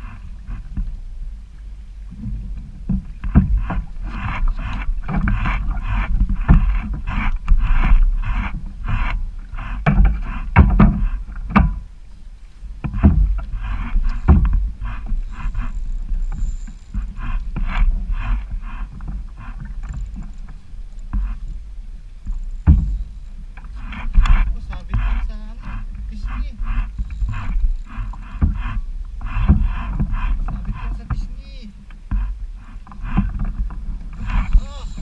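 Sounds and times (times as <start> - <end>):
water slapping against hull: 0.0 - 35.0
wind rumble on microphone: 0.0 - 35.0
knocks against boat: 2.2 - 9.2, 9.8 - 11.9, 12.8 - 15.2, 22.2 - 31.4.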